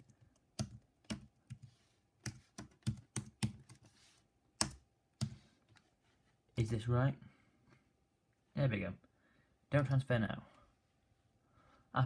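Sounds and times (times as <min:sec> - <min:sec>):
keyboard typing: 0:00.0 - 0:03.9, 0:04.6 - 0:05.4.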